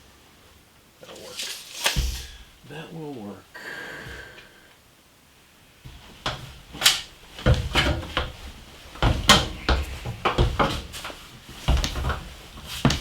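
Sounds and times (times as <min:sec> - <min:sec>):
objects knocking and thudding: 0:01.2 - 0:02.6, 0:05.9 - 0:13.0.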